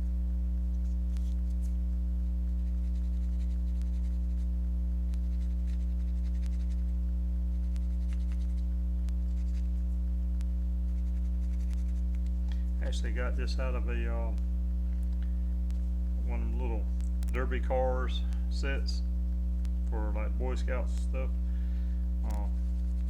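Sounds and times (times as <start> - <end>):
loud electrical hum: 0.0 - 23.0.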